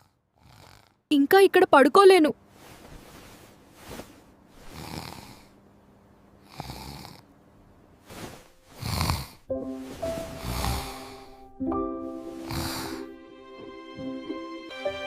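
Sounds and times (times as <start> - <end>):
man snoring: 0.0 - 1.1, 4.6 - 5.6, 6.4 - 7.3, 8.7 - 9.5, 10.2 - 11.6, 12.3 - 13.2
music: 9.5 - 15.0.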